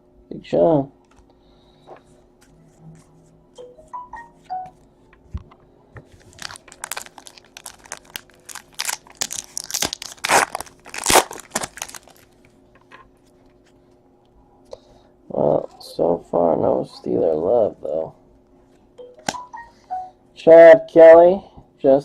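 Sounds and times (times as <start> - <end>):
wrapper tearing and crinkling: 6.2 - 12.4.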